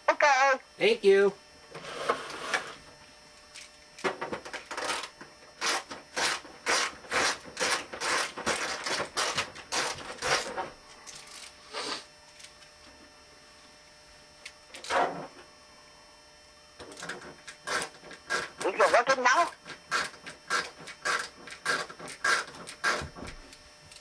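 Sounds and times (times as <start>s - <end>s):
screwdriver clicking and scraping: 4.7s - 10.5s, 16.9s - 18.6s, 19.7s - 23.0s.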